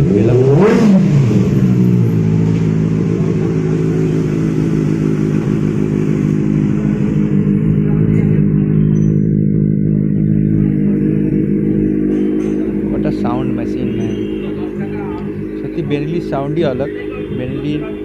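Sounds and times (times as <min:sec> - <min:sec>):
motorcycle engine idling: 0:00.0 - 0:18.0.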